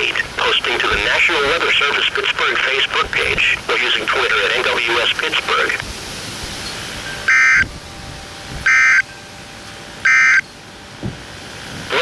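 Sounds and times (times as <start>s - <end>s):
steady hiss: 0.0s - 12.0s
raspy digital data tone bursts: 8.6s - 9.1s, 10.0s - 10.5s.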